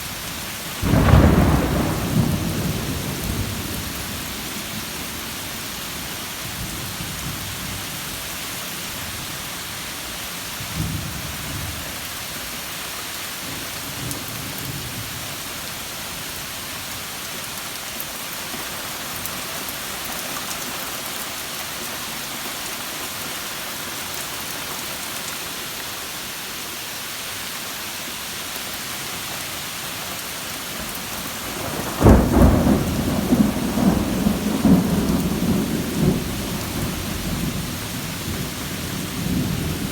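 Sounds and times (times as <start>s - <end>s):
rain hissing: 0.0s - 39.9s
thunder rumbling: 0.8s - 7.8s, 31.2s - 39.9s.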